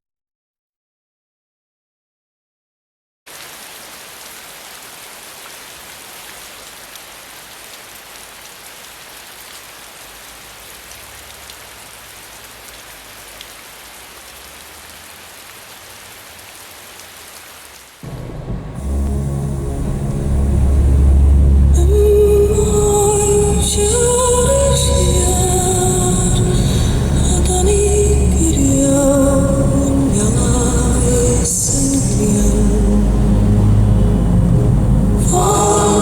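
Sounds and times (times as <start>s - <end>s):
steady rain: 3.3s - 36.0s
faint low rumble: 18.0s - 36.0s.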